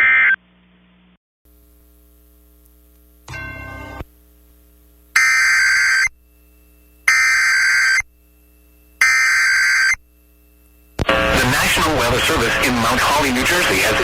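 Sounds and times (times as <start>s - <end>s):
buzzy digital data bursts: 11.1s - 14.0s.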